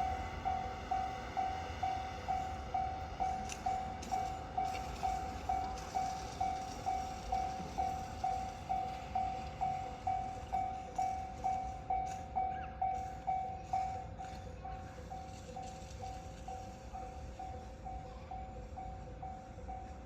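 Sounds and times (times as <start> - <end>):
level crossing warning bell: 0.0 - 20.0.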